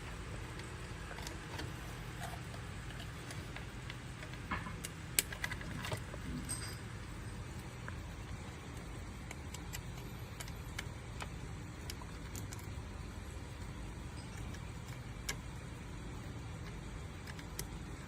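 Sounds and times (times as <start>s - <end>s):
steady low hum: 0.0s - 18.0s
light clicks of small parts: 7.6s - 12.8s, 13.5s - 18.0s.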